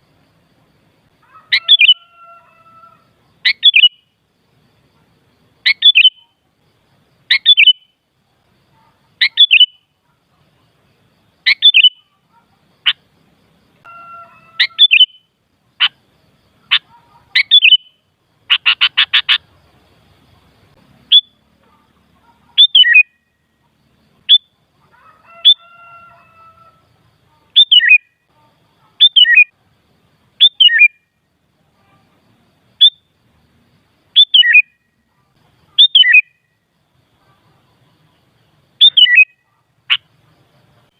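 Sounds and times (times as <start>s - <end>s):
bulbul chirping calls: 1.2s - 2.1s, 3.4s - 4.2s, 5.5s - 6.4s, 7.2s - 8.0s, 8.7s - 10.0s, 11.4s - 13.1s, 13.8s - 24.6s, 27.4s - 29.6s, 30.4s - 31.1s, 32.8s - 33.1s, 34.1s - 35.0s, 35.6s - 36.6s, 38.0s - 40.1s.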